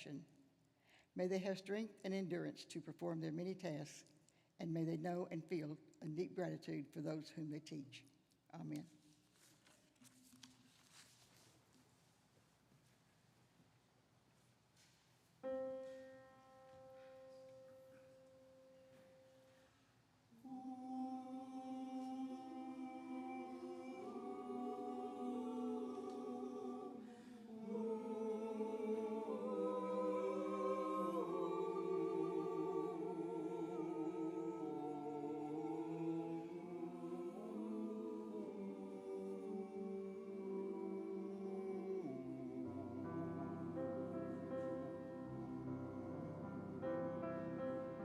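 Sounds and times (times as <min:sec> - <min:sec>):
church choir singing: 0:15.4 - 0:48.0.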